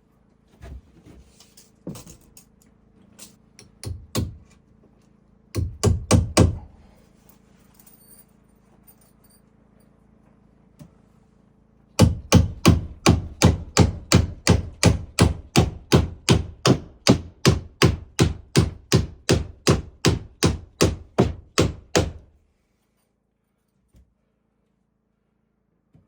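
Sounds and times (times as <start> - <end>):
hammer striking wood: 3.7 - 4.5, 5.6 - 6.7, 12.0 - 22.3.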